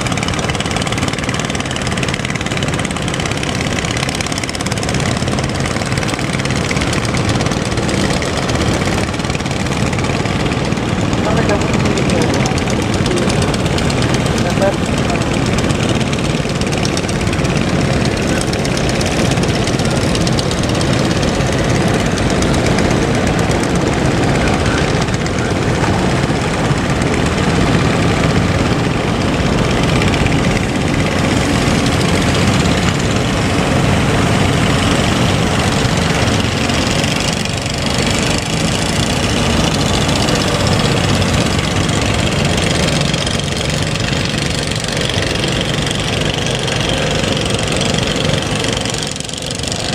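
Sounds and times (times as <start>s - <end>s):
boat engines running: 0.0s - 49.9s
continuous wash of noise: 0.0s - 49.9s.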